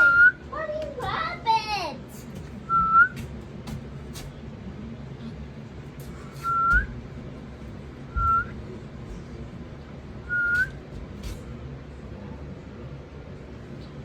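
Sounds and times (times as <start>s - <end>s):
cockatoo whistling: 2.7s - 3.2s, 6.4s - 6.9s, 8.1s - 8.6s, 10.3s - 10.8s.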